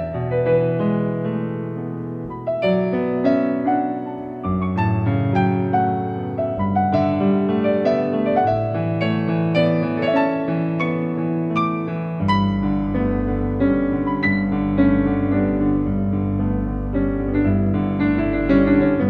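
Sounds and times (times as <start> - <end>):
piano music: 0.0 - 19.0
deep bass: 10.9 - 19.0.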